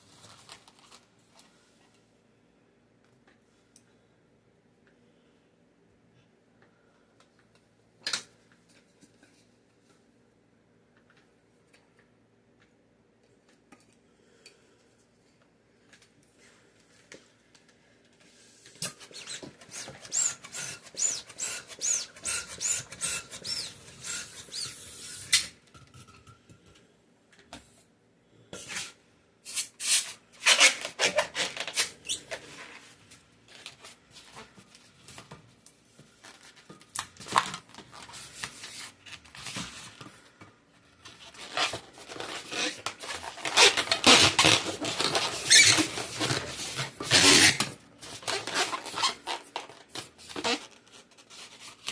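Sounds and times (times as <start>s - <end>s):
balloons rubbing and crackling: 18.8s - 25.5s, 29.6s - 33.0s, 41.0s - 51.9s
balloons squeaking: 18.9s - 25.5s, 29.8s - 32.4s, 41.3s - 51.0s.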